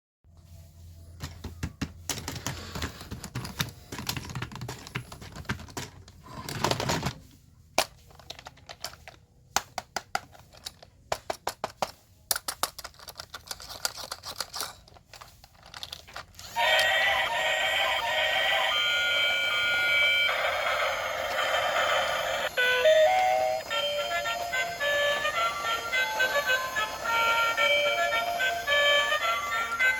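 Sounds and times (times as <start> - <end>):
melodic music: 22.2 - 29.9.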